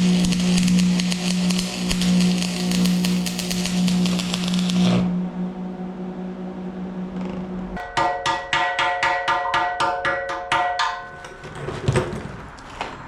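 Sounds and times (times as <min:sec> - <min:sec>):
low electrical hum: 0:00.0 - 0:08.8
sustained tones: 0:01.7 - 0:09.6.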